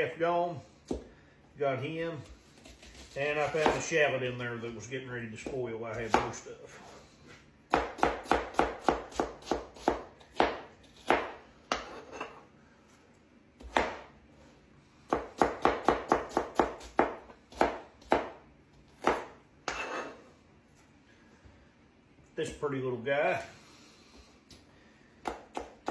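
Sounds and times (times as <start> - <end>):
knife chopping on cutting board: 2.6 - 3.9, 7.7 - 12.4, 13.6 - 14.1, 15.1 - 20.2, 25.2 - 25.9.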